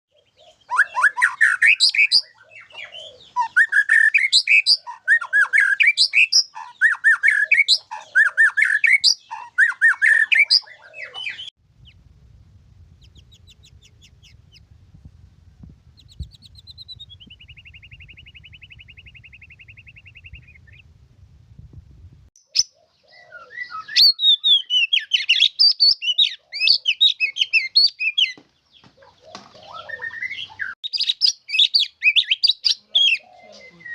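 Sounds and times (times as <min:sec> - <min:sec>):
bird singing whistled phrases: 0:00.7 - 0:11.5, 0:16.0 - 0:20.8, 0:23.3 - 0:28.4
low hum: 0:11.6 - 0:22.3.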